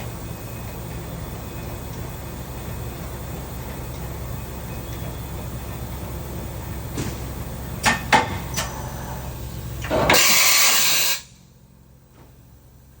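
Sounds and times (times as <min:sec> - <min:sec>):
milling machine humming: 0:00.0 - 0:10.8
loud rushing hiss: 0:10.1 - 0:11.3.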